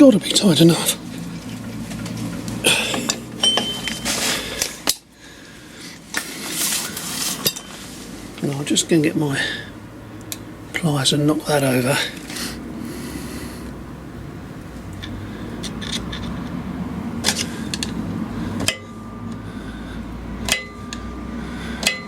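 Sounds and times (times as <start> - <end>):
ringing metal strikes: 3.4 - 4.2, 18.6 - 19.5, 20.4 - 22.0.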